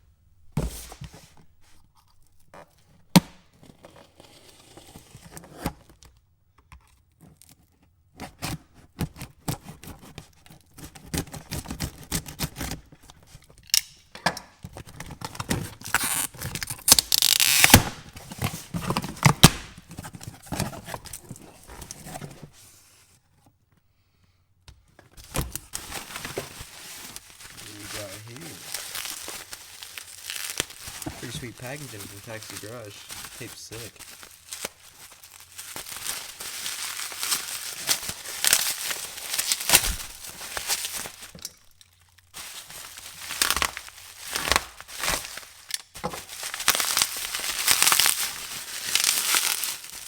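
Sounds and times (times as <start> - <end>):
cardboard box thunks and scrapes: 0.6 - 1.3
cardboard tearing: 15.2 - 22.5, 25.2 - 41.4, 42.4 - 50.0.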